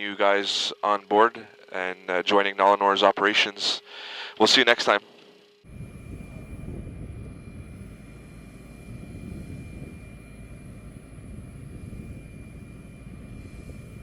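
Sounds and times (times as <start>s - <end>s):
high-pitched whine: 0.0s - 14.0s
aircraft rumble: 5.7s - 14.0s.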